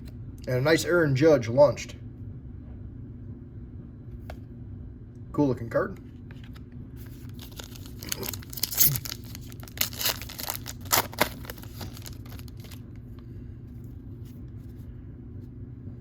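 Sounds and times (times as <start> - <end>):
wrapper tearing and crinkling: 7.2 - 12.8.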